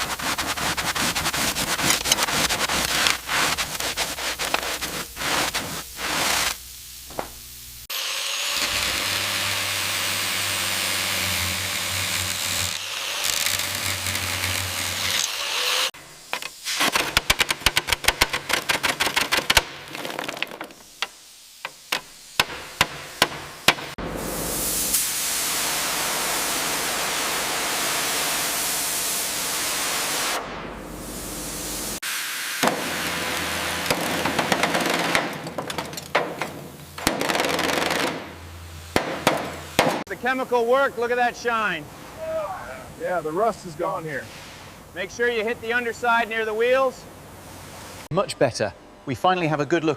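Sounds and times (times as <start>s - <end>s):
pressure washer spray hiss: 0.0s - 8.3s, 15.4s - 17.0s, 20.8s - 33.8s, 44.2s - 44.8s.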